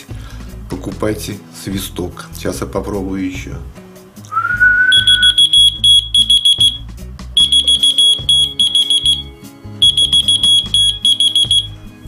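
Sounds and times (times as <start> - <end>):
person whistling: 4.3 - 6.8, 7.4 - 11.8
shrill electronic beeping: 4.4 - 6.8, 7.4 - 11.8.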